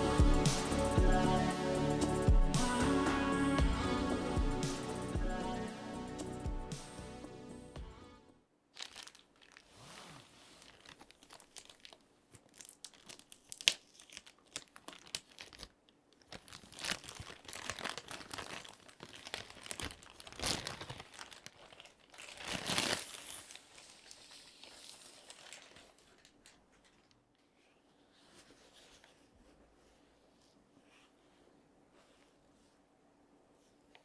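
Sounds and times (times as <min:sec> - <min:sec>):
packaging crinkling and tearing: 0:08.7 - 0:27.3.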